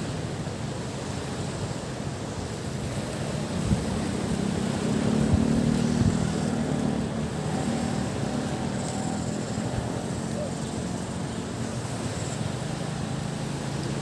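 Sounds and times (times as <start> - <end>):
surf washing: 0.0 - 14.0
motor engine droning: 2.9 - 14.0.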